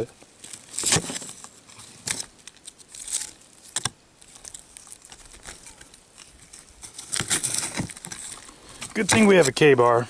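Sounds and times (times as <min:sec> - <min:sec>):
s'more crunching and tearing: 0:00.0 - 0:09.8.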